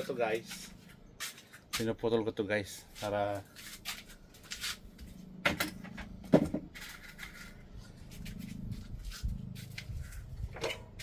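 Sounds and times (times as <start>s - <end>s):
scrapes and knocks by hand: 6.4s - 11.0s.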